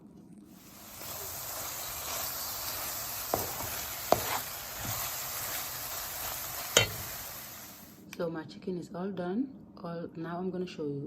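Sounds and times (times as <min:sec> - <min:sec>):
onions sizzling in a pan: 0:00.6 - 0:08.0.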